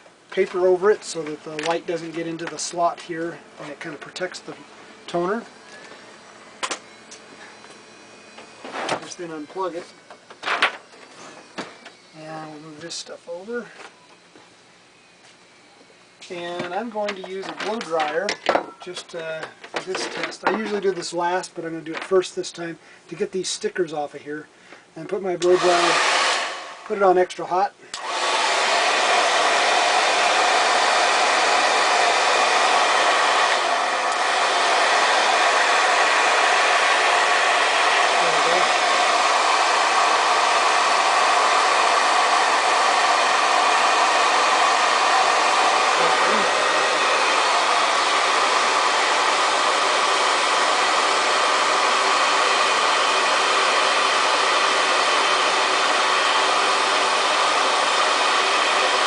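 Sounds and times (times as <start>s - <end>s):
blow dryer running: 0.0s - 14.0s, 25.4s - 27.2s, 27.9s - 59.0s.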